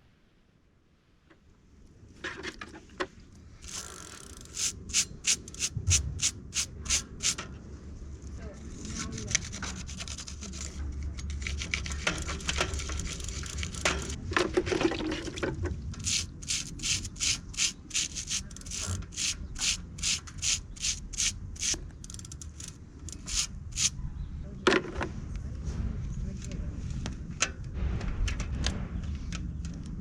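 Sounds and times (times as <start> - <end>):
brush scrubbing: 3.7 - 7.4, 8.9 - 14.2, 16.0 - 23.9.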